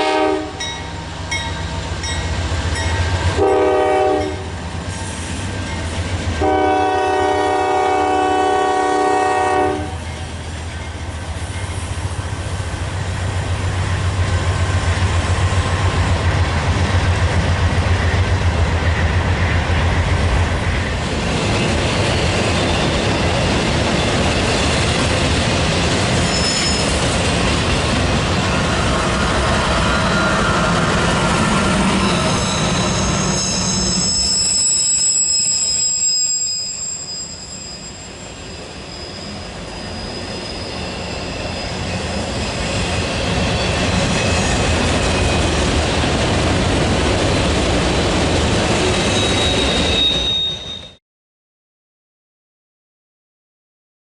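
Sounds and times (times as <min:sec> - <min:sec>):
train wheels rumbling on rails: 0:00.0 - 0:51.0
train wheels squealing: 0:10.0 - 0:12.2, 0:21.3 - 0:25.0, 0:26.1 - 0:27.3, 0:28.4 - 0:45.7, 0:48.7 - 0:51.0.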